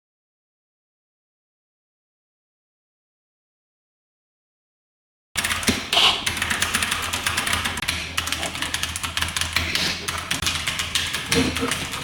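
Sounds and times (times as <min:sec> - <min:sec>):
mechanical keyboard typing: 0:05.4 - 0:12.0.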